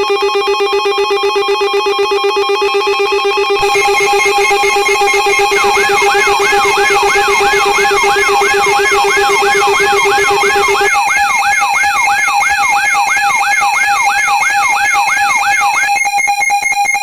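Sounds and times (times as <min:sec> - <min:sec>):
siren tone swooping: 0:03.6 - 0:11.4
rapid pulsing beeps: 0:03.6 - 0:17.0
steady alarm tones: 0:03.6 - 0:17.0.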